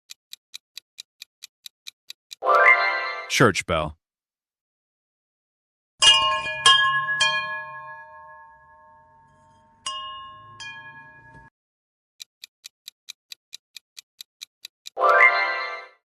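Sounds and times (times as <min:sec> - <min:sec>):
wind chimes ringing: 0:06.0 - 0:11.5.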